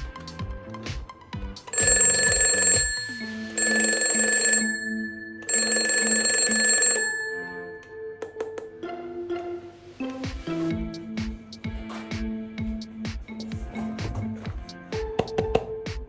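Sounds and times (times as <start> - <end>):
background music with steady beat: 0.0 - 4.6, 7.5 - 16.0
electronic alarm ringing: 1.7 - 8.4.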